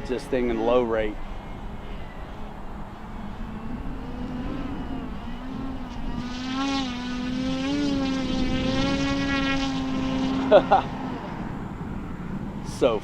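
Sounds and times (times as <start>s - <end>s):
wind noise on microphone: 0.0s - 13.0s
model plane motor droning: 3.0s - 12.4s.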